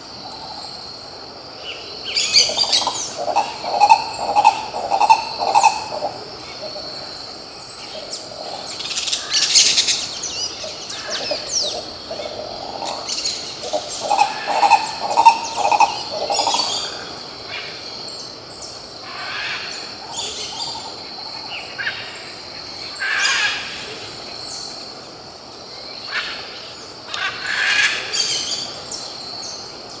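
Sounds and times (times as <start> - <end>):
birds chirping: 2.1 - 17.1
ibis calling low notes: 2.4 - 7.1, 10.6 - 16.8.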